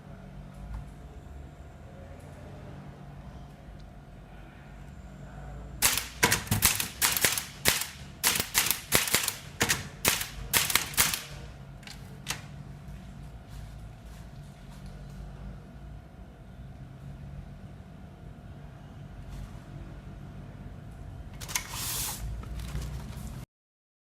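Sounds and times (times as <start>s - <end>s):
typewriter keys striking: 5.8s - 12.4s.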